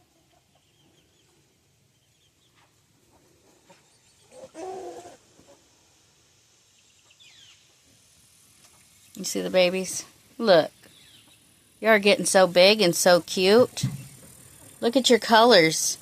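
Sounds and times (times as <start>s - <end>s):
chickens clucking: 0.0s - 1.4s, 2.0s - 5.8s.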